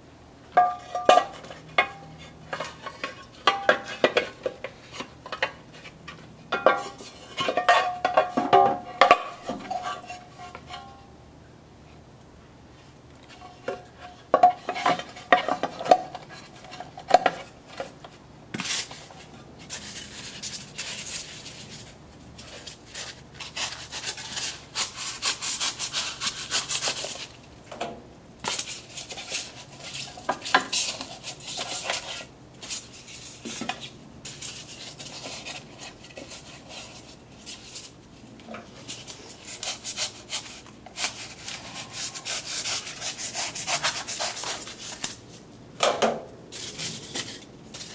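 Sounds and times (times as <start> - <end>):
scraping and rubbing strokes: 18.6 - 27.4, 28.5 - 45.4.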